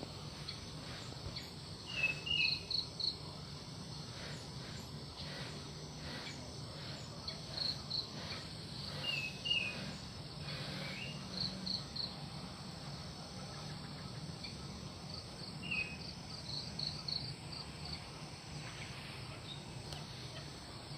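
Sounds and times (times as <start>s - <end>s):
bird slurred chirps: 0.2s - 3.4s, 4.0s - 12.3s, 13.4s - 17.9s.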